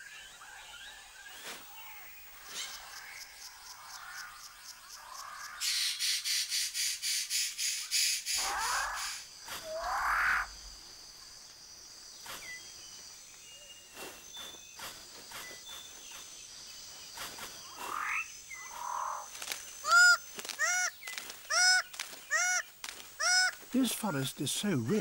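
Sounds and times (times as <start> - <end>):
birds calling with upslurred calls: 5.2 - 10.7, 12.0 - 25.0.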